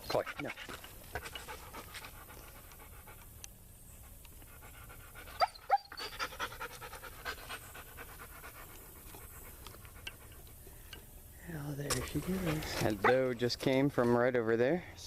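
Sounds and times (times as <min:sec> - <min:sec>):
dog panting: 0:00.0 - 0:03.4, 0:04.0 - 0:10.7, 0:12.0 - 0:13.4
dog whining: 0:05.4 - 0:06.5, 0:12.4 - 0:13.3.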